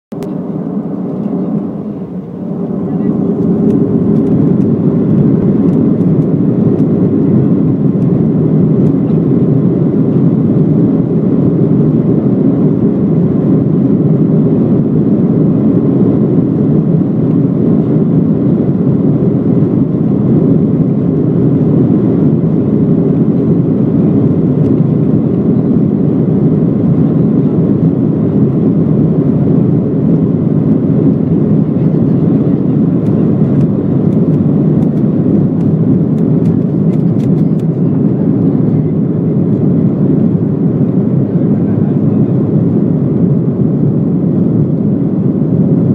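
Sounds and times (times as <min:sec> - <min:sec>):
jet engines running: 0:00.1 - 0:45.9.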